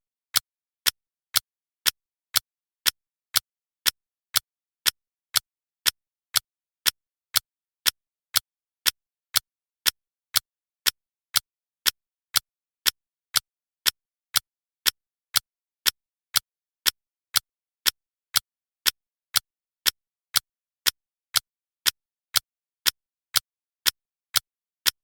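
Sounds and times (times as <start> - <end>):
clock ticking: 15.8 - 25.0.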